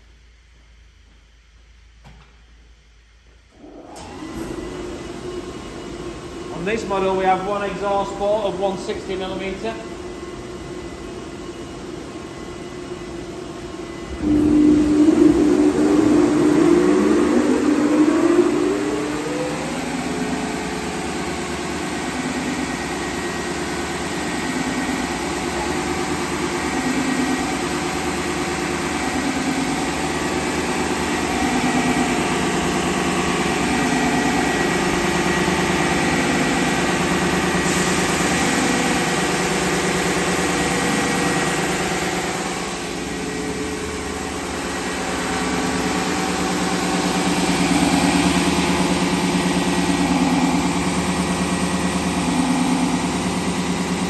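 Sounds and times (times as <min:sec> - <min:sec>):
belt sander humming: 0:14.0 - 0:21.6.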